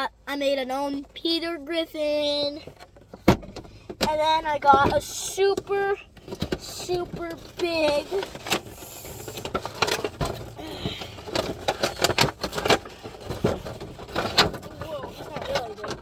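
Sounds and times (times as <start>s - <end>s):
packaging clicks and crinkles: 6.2s - 16.0s.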